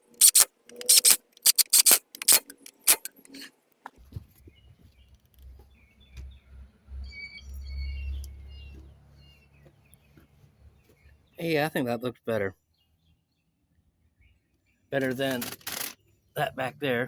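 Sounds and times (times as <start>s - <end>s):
sharp clicks: 0.0s - 3.4s.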